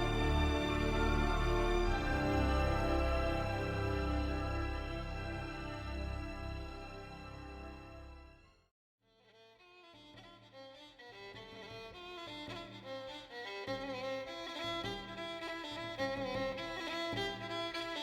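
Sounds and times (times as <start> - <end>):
background music: 0.0 - 8.5
bowed strings music: 0.0 - 8.5.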